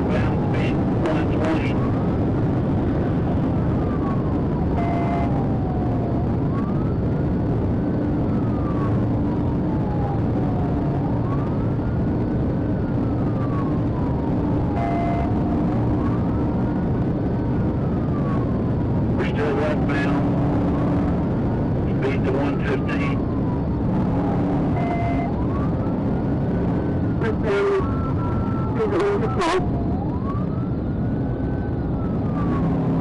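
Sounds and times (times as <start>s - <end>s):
police siren wailing: 0.0s - 33.0s
road and engine noise: 0.0s - 33.0s.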